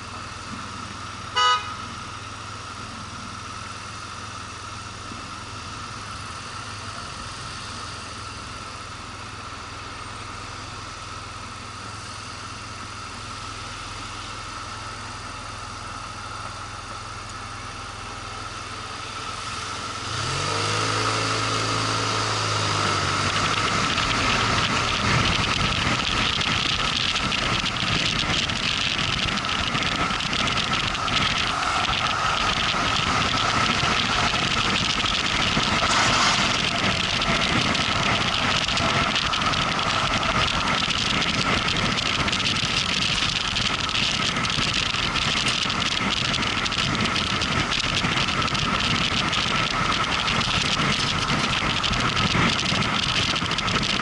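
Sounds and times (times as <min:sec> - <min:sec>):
motorcycle engine idling and revving: 0:00.0 - 0:54.0
short loud beep: 0:01.4 - 0:01.8
rushing wind noise: 0:19.6 - 0:54.0.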